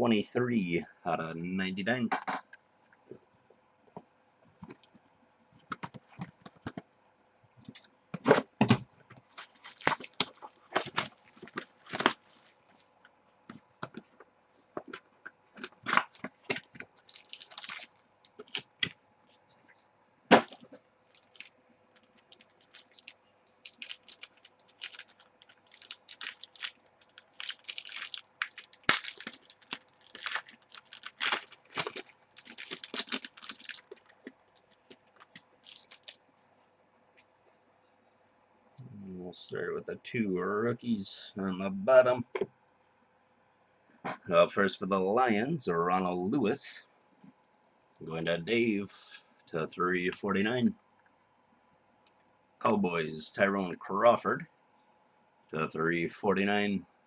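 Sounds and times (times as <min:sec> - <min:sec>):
cards and plastic wrapping crinkling: 0:09.0 - 0:12.9, 0:15.6 - 0:19.0, 0:20.4 - 0:36.2.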